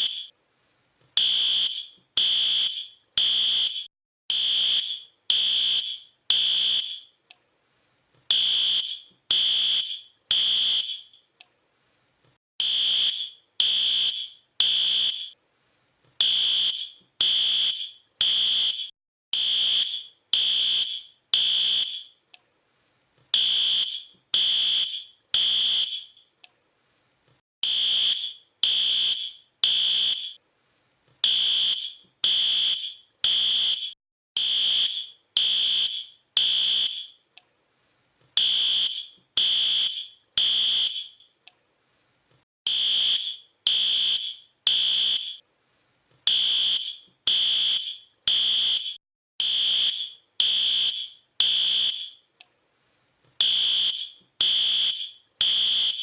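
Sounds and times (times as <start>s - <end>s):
fire alarm beeping: 0.0s - 0.3s, 1.2s - 7.2s, 8.3s - 11.2s, 12.6s - 15.4s, 16.2s - 22.2s, 23.4s - 26.2s, 27.6s - 30.4s, 31.2s - 37.2s, 38.4s - 41.3s, 42.7s - 45.4s, 46.3s - 52.2s, 53.4s - 56.0s.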